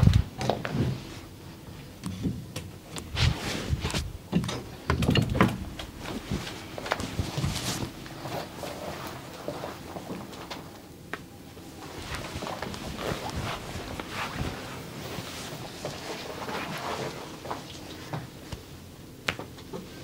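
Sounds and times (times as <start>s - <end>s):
rubbing and scratching: 11.8s - 18.1s.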